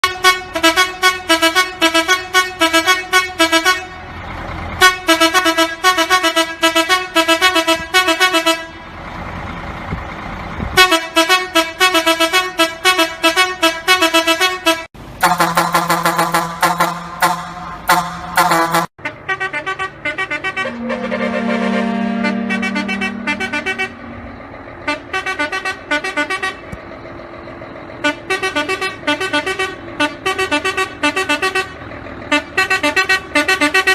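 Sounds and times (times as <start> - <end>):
vehicle horn short toots: 0.0 - 4.0, 4.8 - 8.8, 10.8 - 24.1, 24.9 - 26.6, 28.0 - 33.9
engine and road noise: 0.0 - 33.9
lower-pitched horn: 10.8 - 26.6.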